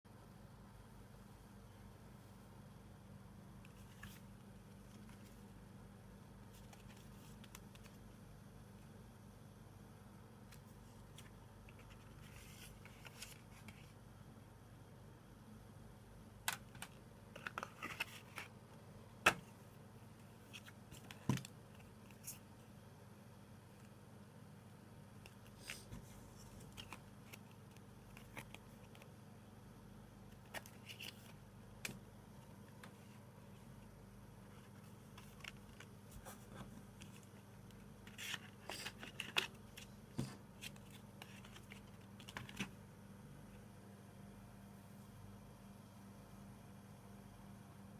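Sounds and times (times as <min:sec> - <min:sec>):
cd packaging clicks and rustles: 0:16.4 - 0:19.6, 0:25.2 - 0:29.2, 0:30.3 - 0:33.2, 0:34.6 - 0:36.0, 0:36.8 - 0:42.8.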